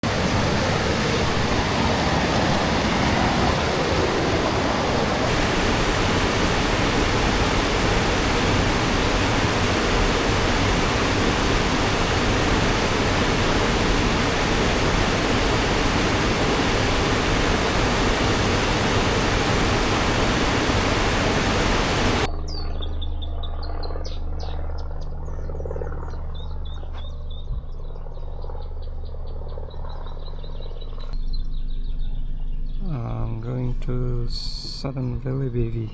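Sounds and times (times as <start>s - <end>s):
roar of rushing water: 0.0s - 22.3s
low steady hum: 0.0s - 35.9s.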